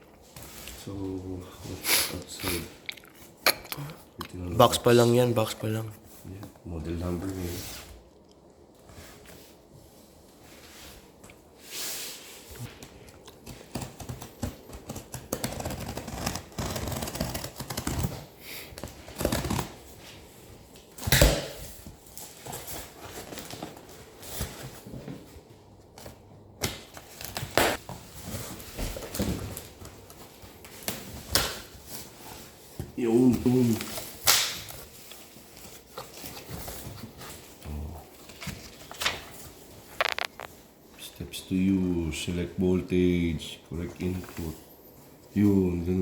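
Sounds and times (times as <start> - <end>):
cardboard packaging rustling: 12.7 - 20.0, 21.7 - 37.6, 38.2 - 40.7.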